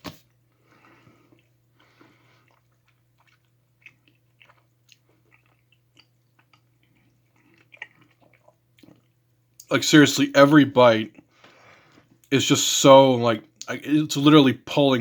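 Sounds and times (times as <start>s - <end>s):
chewing sticky candy: 0.8s - 9.7s.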